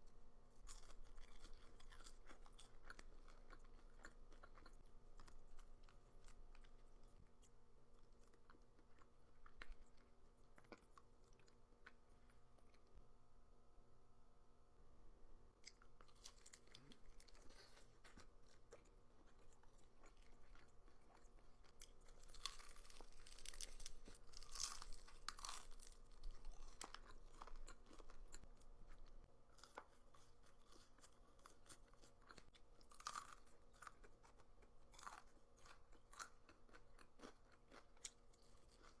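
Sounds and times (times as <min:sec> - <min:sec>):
crunching fried chicken: 0:00.5 - 0:12.9, 0:15.6 - 0:39.0.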